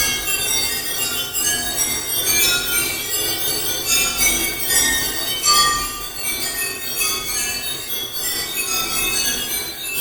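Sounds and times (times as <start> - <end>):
high piano-like notes: 5.4 - 6.5.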